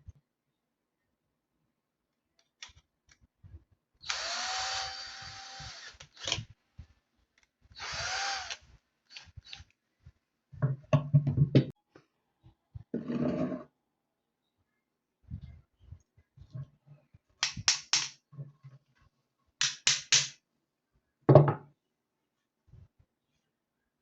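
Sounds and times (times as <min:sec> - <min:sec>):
small electric motor running: 0:04.1 - 0:06.4, 0:07.8 - 0:08.6.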